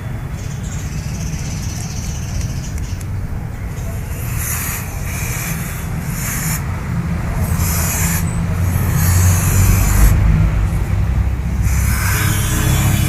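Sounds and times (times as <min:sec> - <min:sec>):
aerosol spray hissing: 0:03.8 - 0:06.7, 0:07.4 - 0:10.8, 0:11.5 - 0:13.0.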